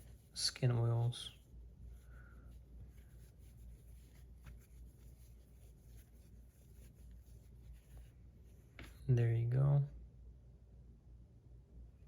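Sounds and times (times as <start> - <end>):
cloth rubbing a fidget spinner: 0.0 - 9.3.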